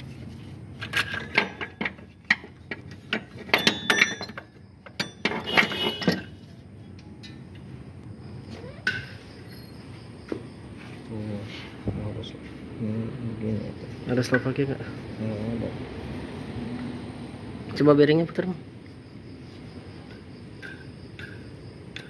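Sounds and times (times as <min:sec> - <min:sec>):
metal tools clinking: 0:00.8 - 0:06.6, 0:08.6 - 0:09.8.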